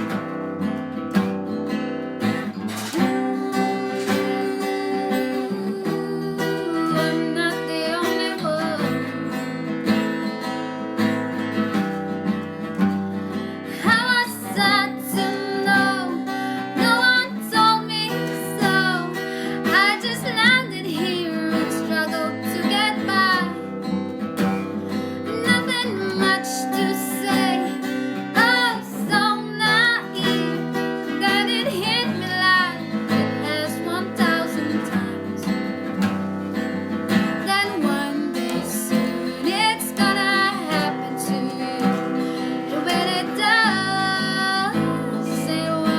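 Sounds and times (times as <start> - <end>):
strummed guitar: 0.0 - 45.9
person singing: 2.8 - 9.3, 13.4 - 23.8, 25.2 - 35.7, 37.1 - 45.9.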